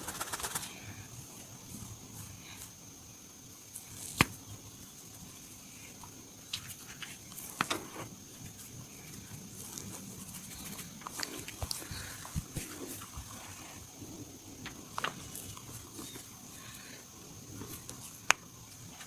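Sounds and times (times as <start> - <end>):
faint high whine: 0.0 - 19.0
hands slapping and patting skin: 4.0 - 4.4
sharp crack: 4.0 - 4.4.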